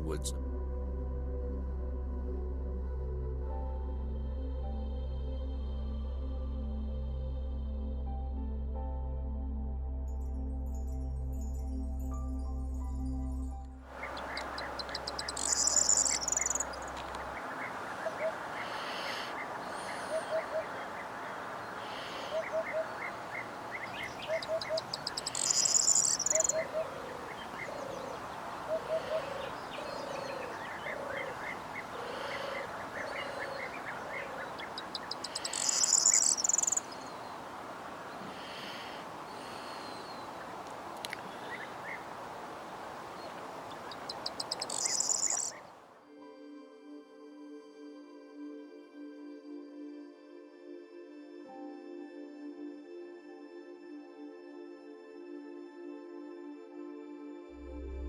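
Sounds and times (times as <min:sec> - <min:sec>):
bird calls and chirps: 0:13.9 - 0:45.8
loud rapid high-pitched bird song: 0:14.0 - 0:37.4, 0:43.2 - 0:45.6
low short bird notes: 0:14.0 - 0:39.0.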